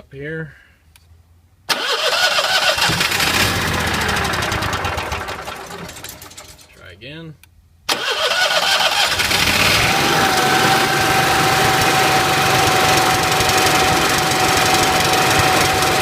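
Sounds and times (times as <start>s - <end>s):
generator engine running: 1.7s - 6.8s, 8.0s - 16.0s
steady whine: 9.1s - 16.0s.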